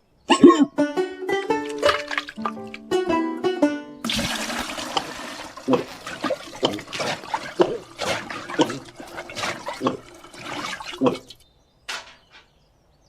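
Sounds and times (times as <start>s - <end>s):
water splash: 1.6s - 2.8s, 4.0s - 11.4s
water gurgles: 4.1s - 11.4s.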